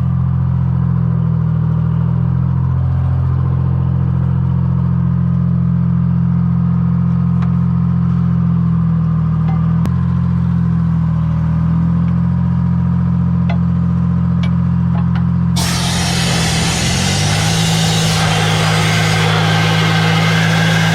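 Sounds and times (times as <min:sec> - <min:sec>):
engine running steadily: 0:00.0 - 0:20.9
sudden rush of broad noise: 0:15.6 - 0:20.9.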